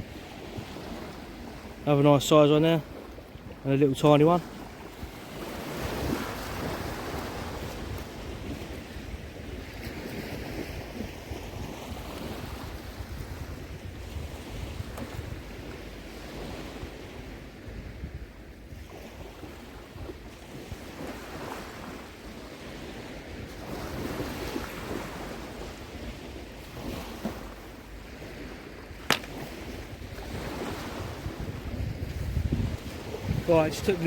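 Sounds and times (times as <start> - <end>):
wind rumbling on microphone: 0.0 - 1.9, 4.4 - 34.0
small waves washing on shore: 0.0 - 34.0
sharp click: 29.0 - 29.4.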